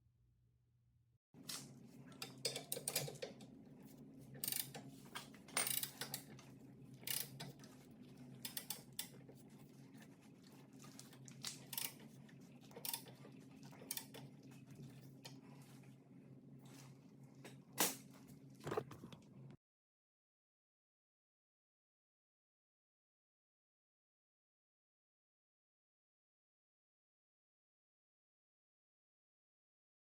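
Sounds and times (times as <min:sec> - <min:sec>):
hand ratchet clicking: 0:04.4 - 0:04.8.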